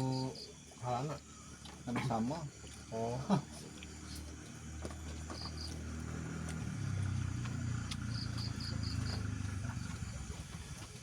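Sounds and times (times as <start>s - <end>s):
motorcycle engine humming: 4.7s - 11.0s.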